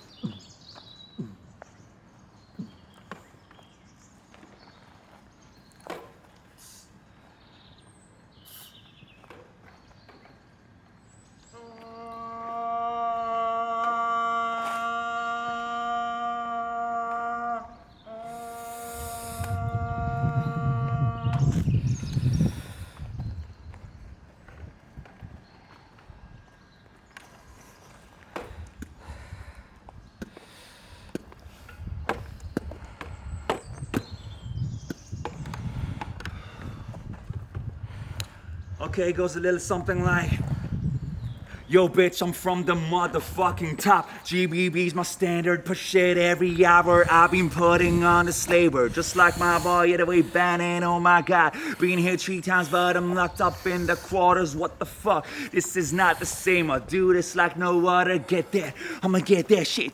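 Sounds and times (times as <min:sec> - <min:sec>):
hummed vocal note: 0:11.6 - 0:21.8.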